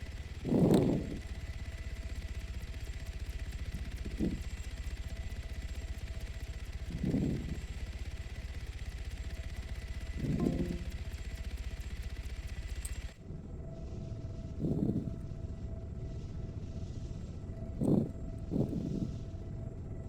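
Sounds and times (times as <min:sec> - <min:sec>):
heavy breathing: 0:00.4 - 0:01.4, 0:06.9 - 0:07.7, 0:14.5 - 0:15.4, 0:16.8 - 0:19.6
steady low rumble: 0:13.2 - 0:20.0.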